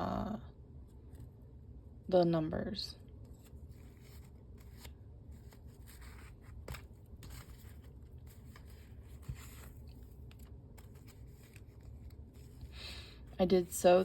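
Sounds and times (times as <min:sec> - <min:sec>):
pages turning: 0:03.2 - 0:14.0
paper rustling and tapping: 0:03.3 - 0:12.8.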